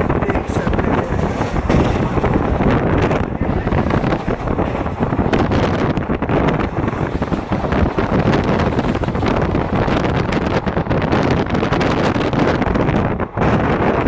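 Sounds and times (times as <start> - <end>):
train running at speed: 0.0 - 14.0
wind on microphone: 0.0 - 14.0.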